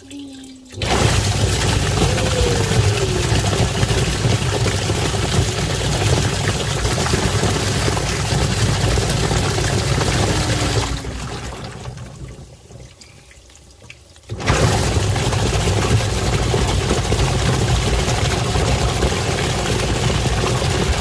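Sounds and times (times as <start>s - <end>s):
washing machine churning water: 0.0s - 21.0s
motor humming: 0.8s - 6.5s, 7.2s - 11.3s.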